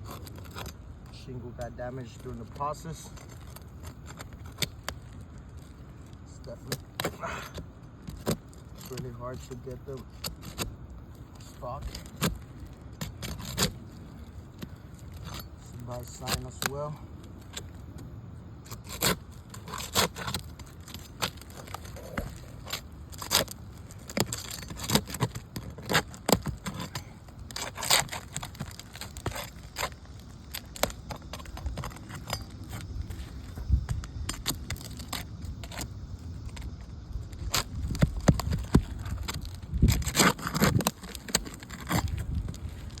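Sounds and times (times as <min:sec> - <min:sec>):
clicks and scrapes of roof shingles: 0:00.0 - 0:43.0.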